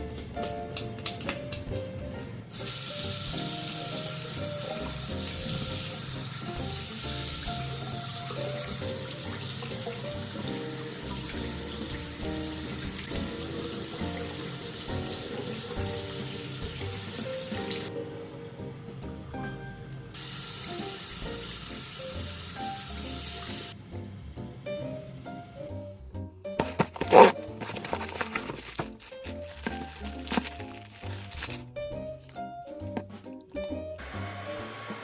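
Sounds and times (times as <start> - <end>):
background music: 0.0 - 35.0
water running from a tap: 2.5 - 17.9, 20.2 - 23.8, 33.0 - 35.0.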